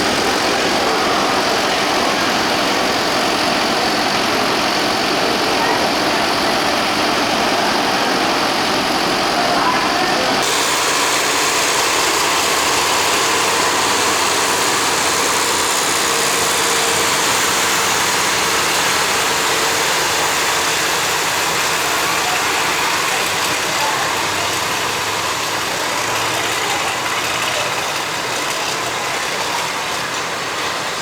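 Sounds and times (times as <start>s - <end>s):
diesel train engine running: 0.0s - 31.0s.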